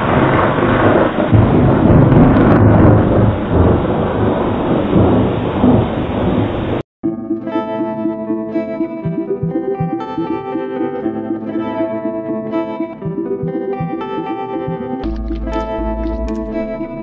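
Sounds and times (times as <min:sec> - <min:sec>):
loud dense rumbling: 0:00.0 - 0:06.8
background music with plucked strings: 0:07.0 - 0:17.0.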